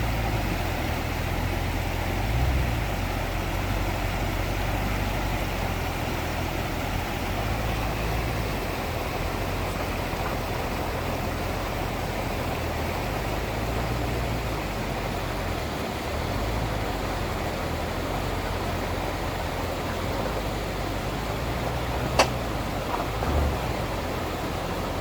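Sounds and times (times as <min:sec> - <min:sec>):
low engine drone: 0:00.0 - 0:25.0
tyre and road noise: 0:00.0 - 0:25.0.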